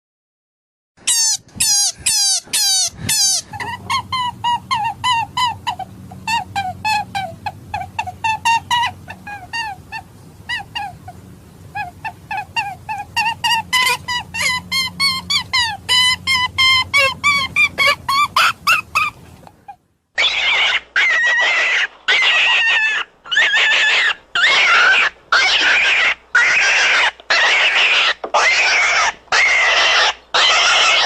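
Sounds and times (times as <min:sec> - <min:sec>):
rabbit squeaking: 0:01.0 - 0:31.0.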